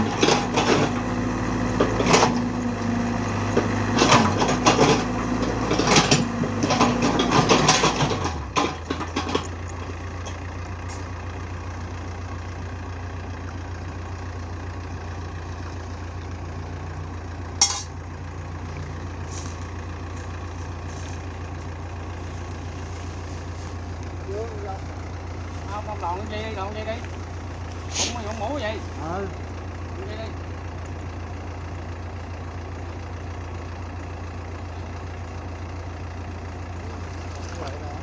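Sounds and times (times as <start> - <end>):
heavy machine engine knocking: 0.0 - 38.0.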